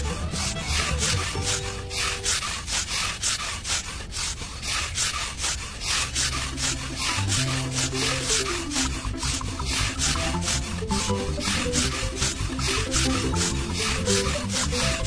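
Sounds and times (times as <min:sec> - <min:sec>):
rhythmic scraping strokes: 0:00.0 - 0:15.0
steady low tones: 0:06.3 - 0:15.0.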